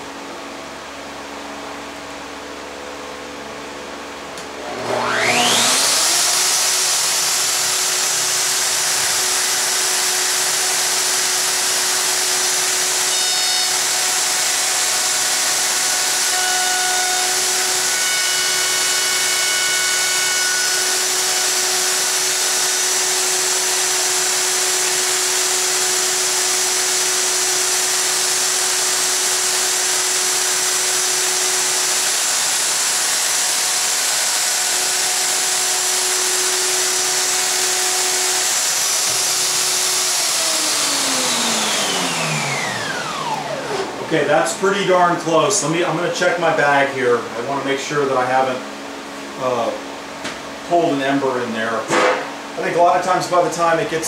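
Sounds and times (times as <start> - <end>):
dust extraction vacuum: 0.0 - 54.0
router cutting: 4.4 - 46.6.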